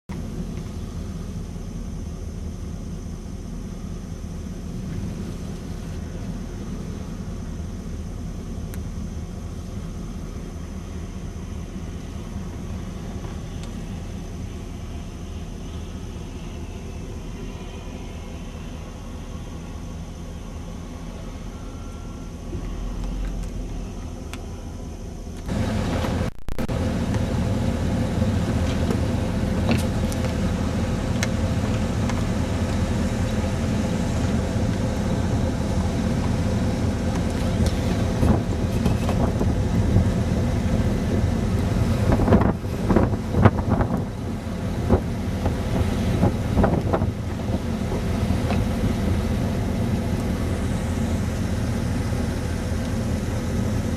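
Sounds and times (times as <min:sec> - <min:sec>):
vehicle engine rumbling: 0:00.0 - 0:53.9.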